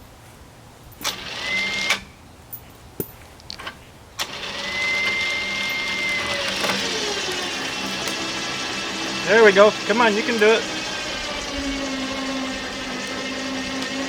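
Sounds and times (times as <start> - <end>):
winch motor running: 1.0 - 2.1, 4.2 - 14.0.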